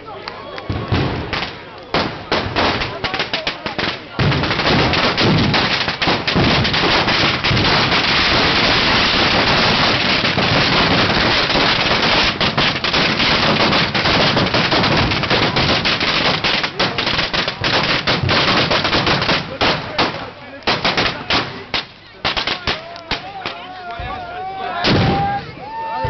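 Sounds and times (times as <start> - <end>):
fireworks bangs and crackles: 0.5 - 25.6.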